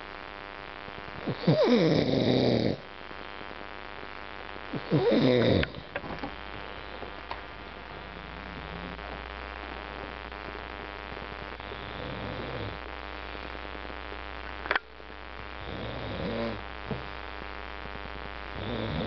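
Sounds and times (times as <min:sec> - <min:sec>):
electrical hum and hiss: 0:00.0 - 0:19.0
faint man snoring: 0:01.2 - 0:02.9, 0:04.7 - 0:06.0, 0:08.0 - 0:09.1, 0:11.6 - 0:13.5, 0:15.5 - 0:17.0, 0:18.5 - 0:19.0
sharp click: 0:14.6 - 0:14.9.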